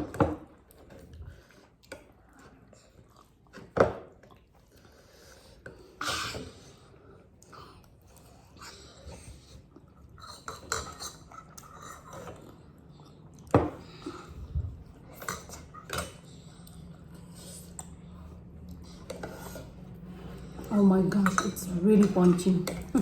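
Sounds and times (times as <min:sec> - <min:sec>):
utensils clinking against a bowl: 0:10.2 - 0:12.6, 0:15.1 - 0:17.9, 0:18.6 - 0:23.0.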